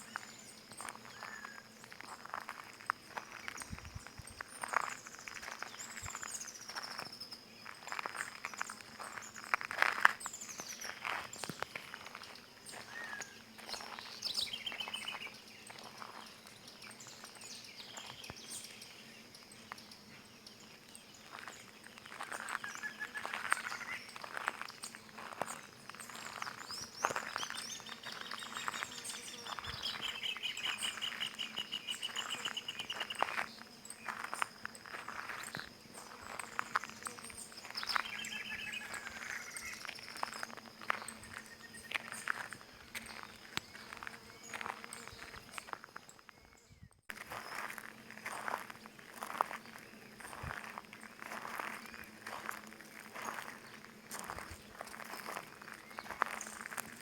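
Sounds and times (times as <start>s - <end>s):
birds singing: 0.0s - 2.4s, 10.2s - 47.7s, 53.2s - 57.0s
footsteps on stony ground: 0.0s - 18.8s, 21.2s - 46.4s, 47.1s - 57.0s.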